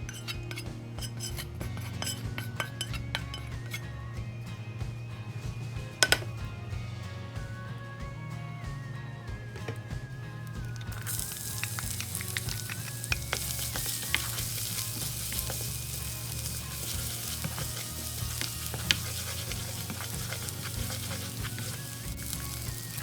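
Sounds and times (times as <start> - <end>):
utensil clicking against pan: 0.0 - 3.8, 10.8 - 23.0
food sizzling in oil: 10.8 - 23.0.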